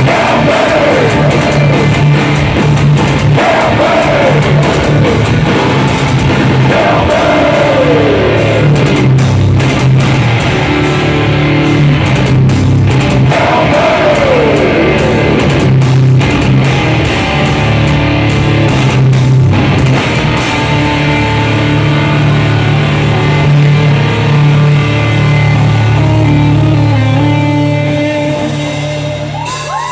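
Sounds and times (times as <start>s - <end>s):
bass and drums: 0.0s - 29.9s
distorted electric guitars: 0.0s - 29.9s.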